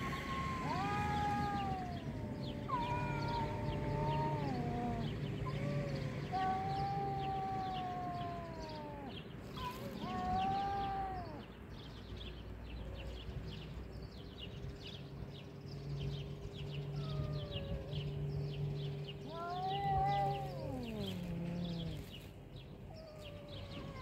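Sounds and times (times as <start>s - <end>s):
cat growling: 0.0s - 11.5s, 16.9s - 22.3s, 22.9s - 24.0s
cats yowling: 0.0s - 11.8s, 16.7s - 24.0s.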